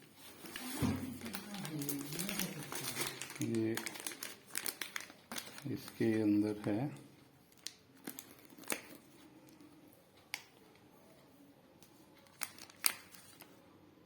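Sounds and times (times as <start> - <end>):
paper or plastic rustling: 0.0 - 6.9, 7.5 - 9.6, 12.2 - 13.6.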